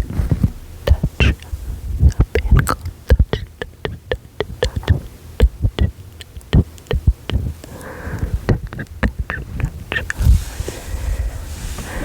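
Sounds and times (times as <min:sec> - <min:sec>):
breath thuds on microphone: 0:00.0 - 0:04.0
mouth clicks and lip smacks: 0:00.0 - 0:10.4
breathy whisper: 0:00.0 - 0:12.0.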